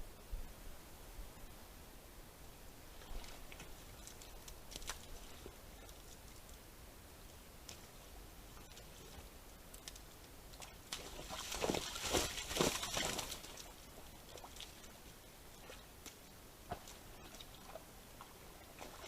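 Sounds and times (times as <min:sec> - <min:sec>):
mud and water splashing: 0:03.0 - 0:06.6, 0:07.6 - 0:19.0
faint ticks: 0:07.2 - 0:10.8.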